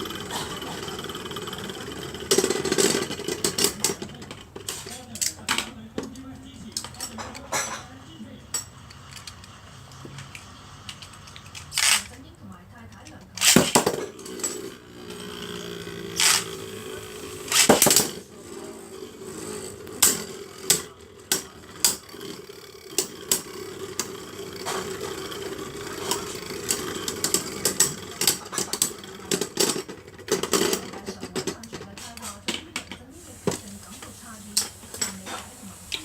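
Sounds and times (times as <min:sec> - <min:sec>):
spinning tops whirring: 0:00.0 - 0:05.6, 0:13.3 - 0:31.9, 0:33.2 - 0:36.0
spinning tops clacking together: 0:13.4 - 0:18.2, 0:19.3 - 0:31.0.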